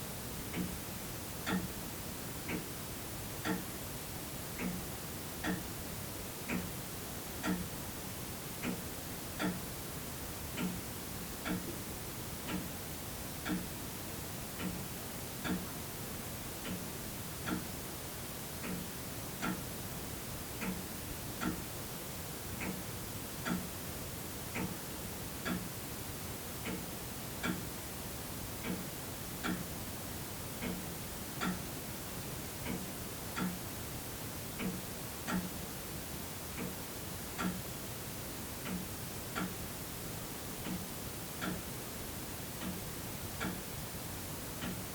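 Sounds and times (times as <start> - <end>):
room tone hiss: 0.0 - 44.9
mechanical clock ticking: 1.4 - 1.7, 3.4 - 3.6, 4.5 - 4.8, 5.4 - 5.6, 6.5 - 6.7, 9.4 - 9.6, 10.5 - 10.8, 11.4 - 11.8, 13.4 - 13.7, 15.4 - 15.7, 17.4 - 17.7, 19.4 - 19.7, 20.6 - 20.8, 23.4 - 23.8, 25.4 - 25.7, 26.6 - 27.7, 29.4 - 29.7, 30.6 - 30.8, 31.4 - 31.7, 36.5 - 37.6, 40.6 - 41.6, 44.6 - 44.9.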